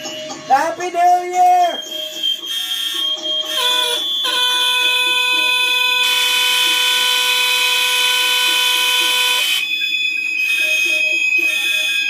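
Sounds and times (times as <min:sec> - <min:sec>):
fire alarm horns and smoke alarms: 0:01.7 - 0:12.0
harsh buzzing horn: 0:02.4 - 0:09.7.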